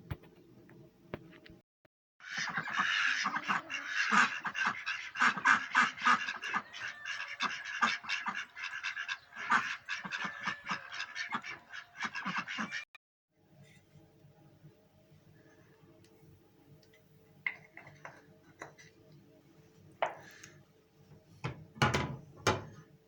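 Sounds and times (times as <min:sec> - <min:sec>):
ducks quacking: 0:02.2 - 0:12.9.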